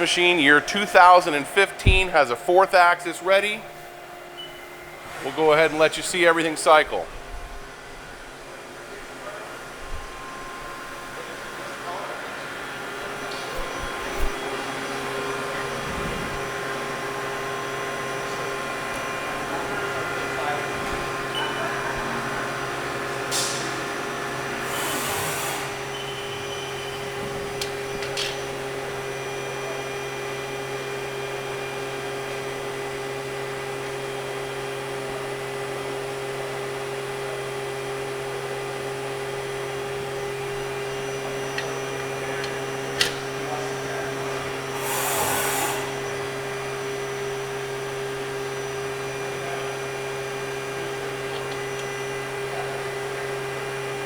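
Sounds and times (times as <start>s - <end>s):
machine hum with steady tones: 0.0s - 54.0s
short bursts of hiss: 44.8s - 46.0s.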